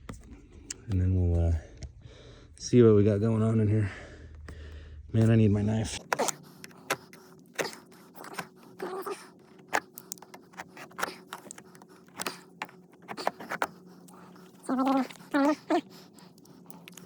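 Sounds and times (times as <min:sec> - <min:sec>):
steady low hum: 0:00.0 - 0:17.0
hands clicking and scraping on duct: 0:06.0 - 0:17.0.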